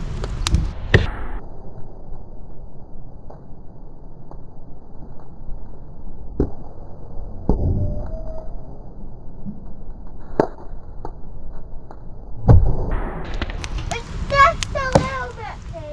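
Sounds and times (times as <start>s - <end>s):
steady low rumble: 0.0s - 3.2s, 12.1s - 15.9s.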